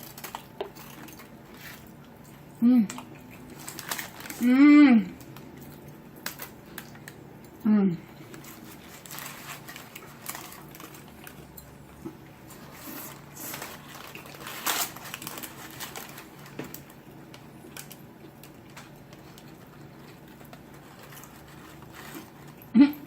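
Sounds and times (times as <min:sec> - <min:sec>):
paper wrapping rustling: 0:03.4 - 0:04.6, 0:08.2 - 0:11.6, 0:12.4 - 0:22.6
chewing: 0:05.2 - 0:22.7.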